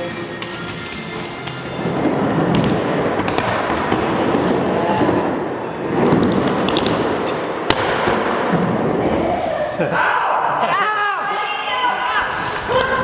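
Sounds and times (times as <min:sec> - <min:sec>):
skateboard wheels rolling: 0:00.4 - 0:09.4.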